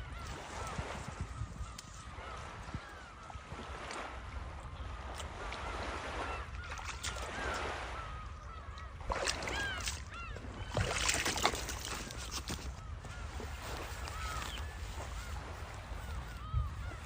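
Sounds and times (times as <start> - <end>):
birds calling: 4.6 - 17.0.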